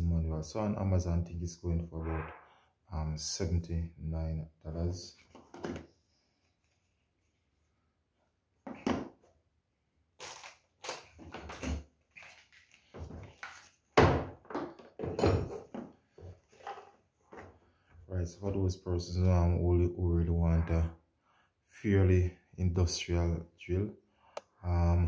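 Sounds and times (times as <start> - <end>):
knocks and thumps of handling: 5.2 - 5.9, 8.6 - 9.3, 11.2 - 17.6.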